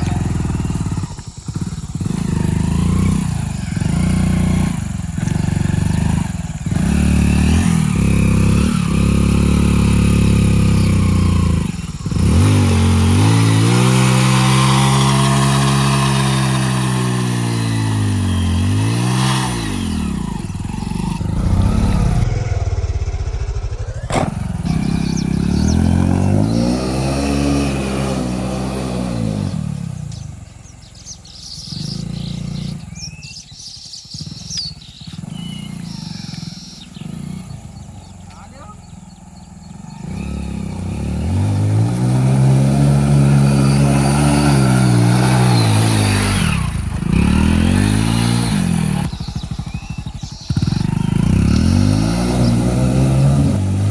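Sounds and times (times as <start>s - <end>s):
motorcycle engine revving: 0.0s - 53.9s.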